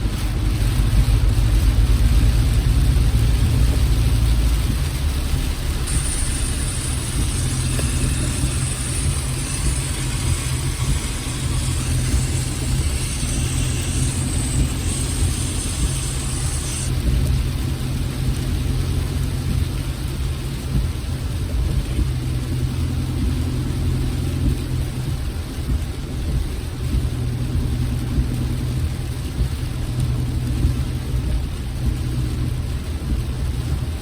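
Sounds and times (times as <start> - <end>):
car engine and road rumble: 0.0 - 34.0
high hiss: 1.4 - 20.0.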